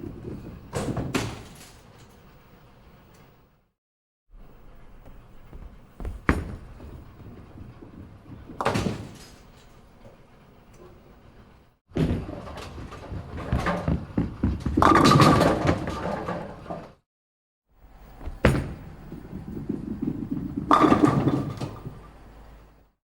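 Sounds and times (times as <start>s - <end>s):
bowling ball rolling: 0.0s - 1.2s, 4.4s - 11.1s, 11.9s - 17.0s, 18.0s - 22.7s
bowling pins crashing: 5.4s - 9.9s, 11.9s - 17.0s, 18.1s - 22.2s
ball landing on lane: 5.5s - 7.2s, 8.5s - 9.4s, 18.2s - 19.5s.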